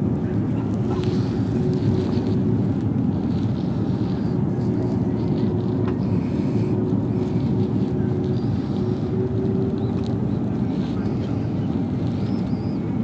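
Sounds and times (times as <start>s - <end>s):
faint constant hum: 0.0s - 13.0s
jet engine drone and rushing air: 0.0s - 13.0s.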